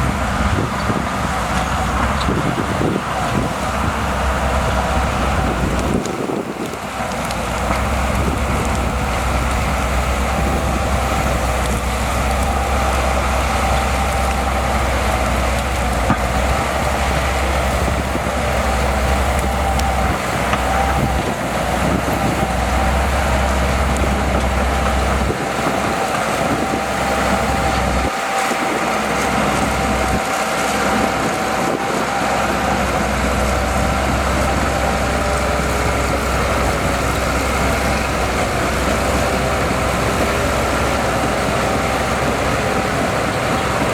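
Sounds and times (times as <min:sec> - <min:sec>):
bulldozer diesel engine running: 0:00.0 - 0:43.9.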